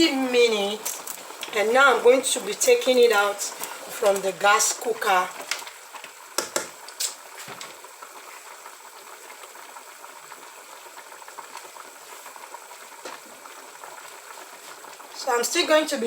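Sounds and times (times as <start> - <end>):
pot boiling with bubbling hiss: 0.0 - 16.0
sharp clicks and knocks: 6.4 - 7.7.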